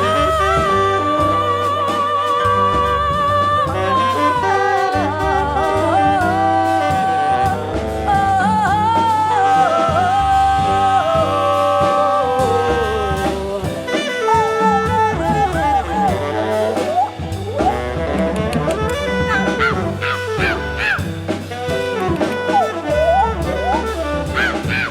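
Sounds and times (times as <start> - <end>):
person singing: 0.0 - 17.7
double bass: 0.0 - 24.9
drums: 0.0 - 24.9
piano: 0.0 - 24.9
tenor saxophone: 0.0 - 24.9.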